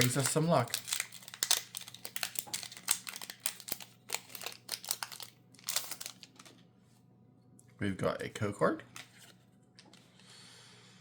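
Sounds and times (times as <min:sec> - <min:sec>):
foil wrapper crinkling: 0:00.0 - 0:06.6.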